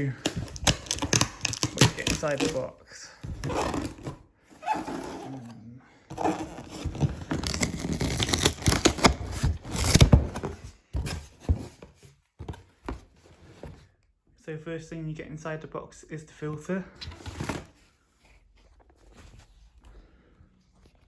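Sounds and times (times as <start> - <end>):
cardboard box being opened: 0.1 - 13.9, 17.1 - 19.8.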